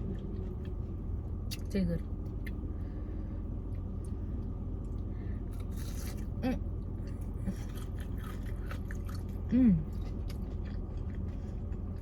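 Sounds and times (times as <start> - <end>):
steady low hum: 0.0 - 12.0
person eating crunchy food: 5.4 - 6.4, 7.0 - 12.0.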